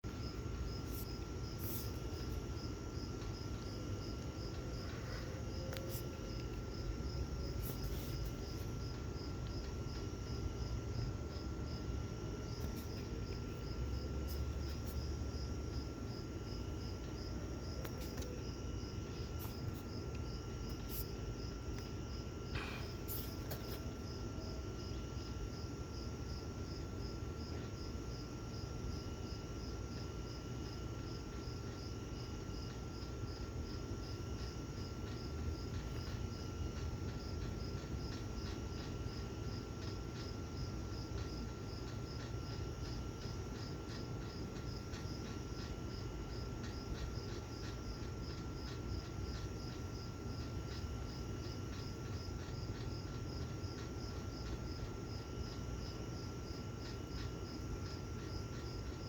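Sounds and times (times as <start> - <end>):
insects chirping: 0.1 - 59.0.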